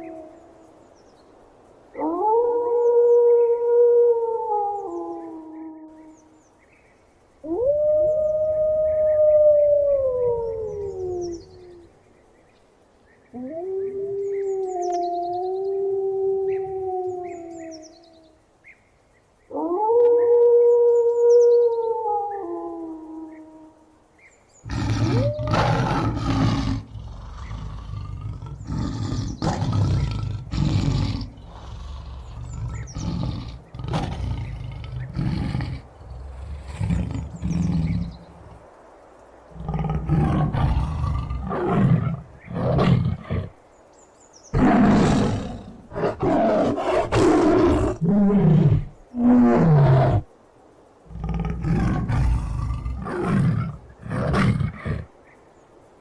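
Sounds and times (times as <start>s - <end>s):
tiger roaring: 24.7s - 38.6s, 39.6s - 43.6s, 44.5s - 50.3s, 51.1s - 55.1s.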